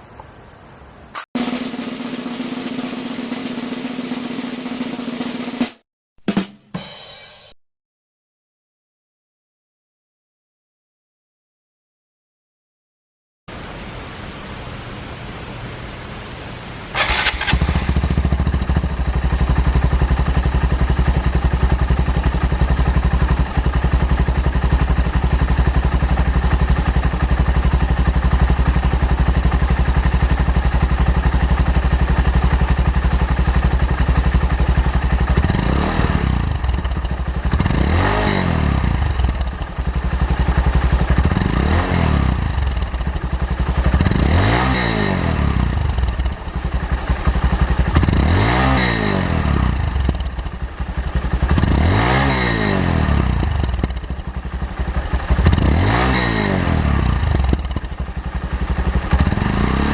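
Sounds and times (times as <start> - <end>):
motorcycle engine idling and revving: 16.9 - 59.9.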